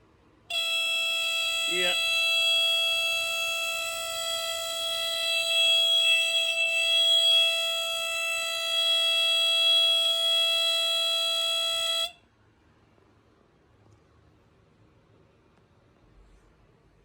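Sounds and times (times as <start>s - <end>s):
smoke alarm tone: 0.5s - 12.2s.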